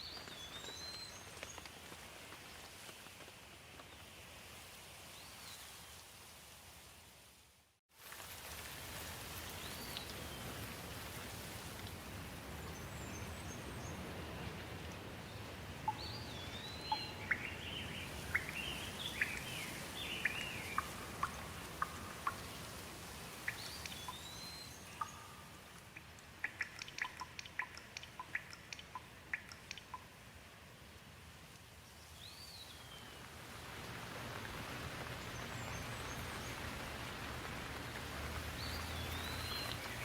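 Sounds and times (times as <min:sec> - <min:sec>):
steady rain: 0:00.0 - 0:40.0
sharp dripping ticks: 0:15.8 - 0:30.2.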